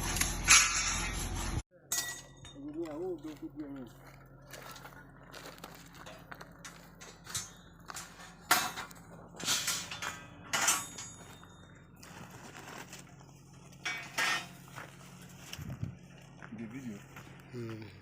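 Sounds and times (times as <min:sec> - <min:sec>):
metal tools clanking and scraping: 0:00.0 - 0:03.0, 0:06.0 - 0:15.3.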